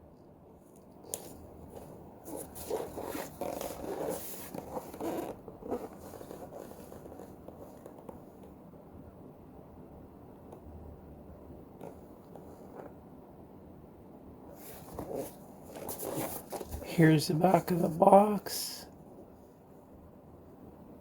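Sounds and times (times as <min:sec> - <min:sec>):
cardboard box rubbing and scraping: 0:01.2 - 0:08.1, 0:14.5 - 0:16.9.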